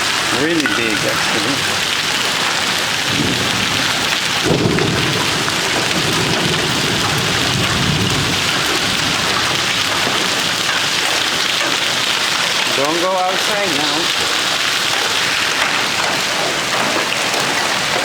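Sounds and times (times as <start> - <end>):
rain and hail hissing: 0.0 - 18.0
low thunder rumble: 0.1 - 11.4.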